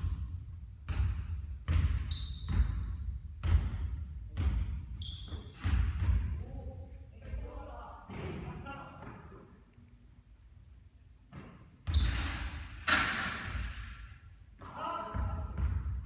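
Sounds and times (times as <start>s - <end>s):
basketball bouncing on hard court: 0.0s - 6.4s, 14.6s - 16.0s
short high squeaks: 11.9s - 12.5s.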